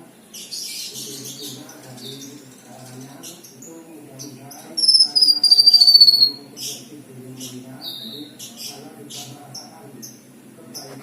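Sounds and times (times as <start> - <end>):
songbird trilling and chirping: 4.8 - 6.8.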